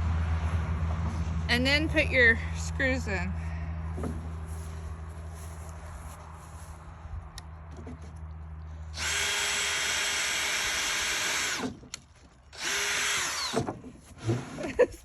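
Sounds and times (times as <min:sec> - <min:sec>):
power drill running: 0:09.0 - 0:11.8, 0:12.6 - 0:13.7.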